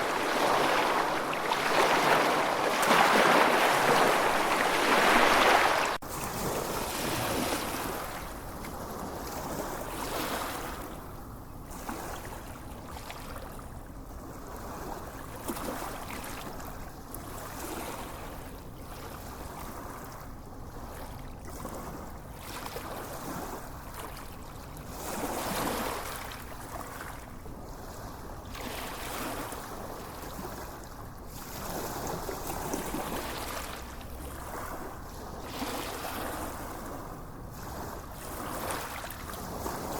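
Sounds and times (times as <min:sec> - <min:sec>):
waves washing onto beach: 0:00.0 - 0:08.4, 0:31.4 - 0:39.9.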